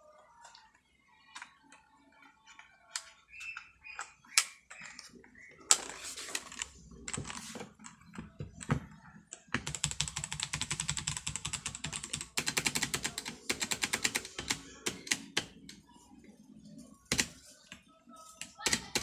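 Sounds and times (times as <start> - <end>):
mechanical keyboard typing: 9.5 - 15.7, 17.1 - 17.4.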